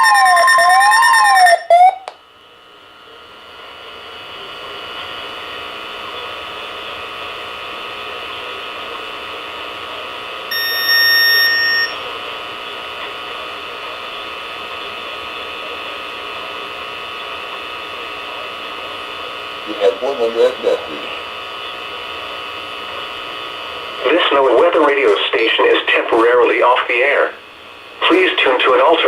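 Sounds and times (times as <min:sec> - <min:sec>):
radio static hiss: 0:03.8 - 0:29.0
faint hum: 0:03.9 - 0:29.0
high beep: 0:10.5 - 0:12.0.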